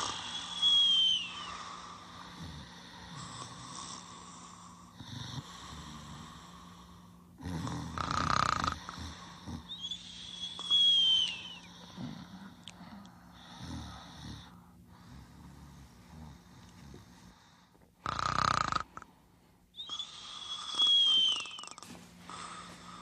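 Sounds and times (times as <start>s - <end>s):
cartoon snoring: 0.0s - 0.6s, 7.4s - 9.7s, 18.0s - 19.0s
high falling whistle: 0.0s - 1.6s, 9.8s - 11.7s, 19.8s - 21.8s
steady low hum: 0.0s - 23.0s.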